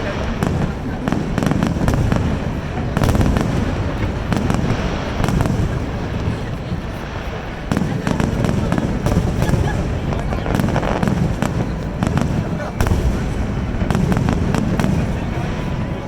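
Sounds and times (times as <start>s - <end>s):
fireworks crackling pops: 0.0s - 16.0s
firework shell booms: 7.2s - 15.4s.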